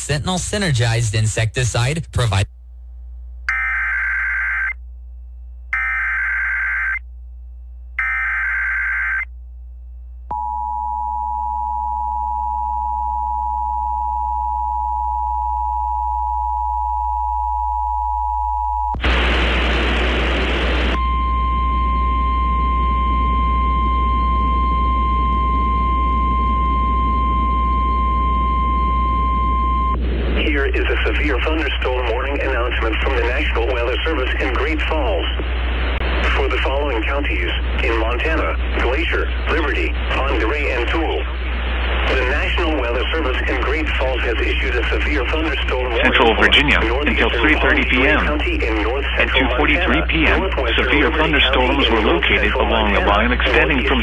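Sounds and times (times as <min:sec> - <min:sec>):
steady warning alarm tone: 0:03.5 - 0:04.8, 0:05.7 - 0:07.0, 0:08.0 - 0:09.3, 0:21.0 - 0:30.0.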